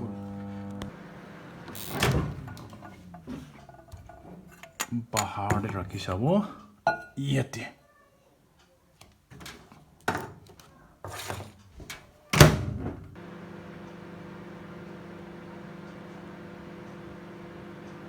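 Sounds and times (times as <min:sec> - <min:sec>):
microwave oven humming: 0:00.0 - 0:04.0, 0:13.2 - 0:18.0
microwave door thumping shut: 0:01.8 - 0:02.6.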